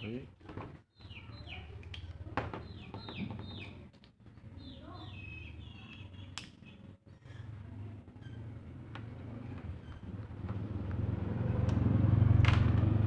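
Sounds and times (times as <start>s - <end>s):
birds chirping: 0.8s - 7.3s.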